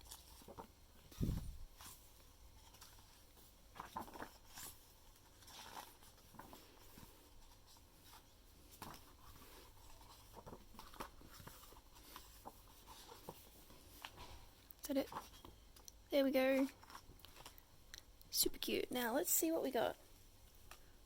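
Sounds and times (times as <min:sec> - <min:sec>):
paper rustling and tapping: 0:00.0 - 0:15.9.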